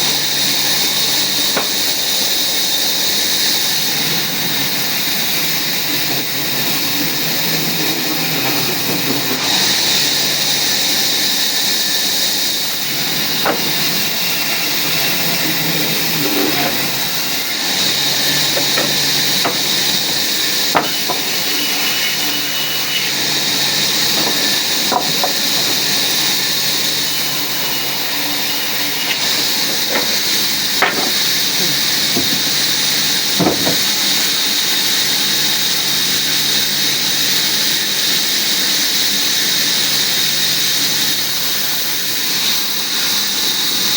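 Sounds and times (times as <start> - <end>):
woodworking machinery hissing: 0.0 - 43.9
sharp clicks and knocks: 1.5 - 2.0, 13.4 - 14.0, 17.8 - 21.6, 23.5 - 26.6, 29.1 - 31.5, 33.4 - 33.9.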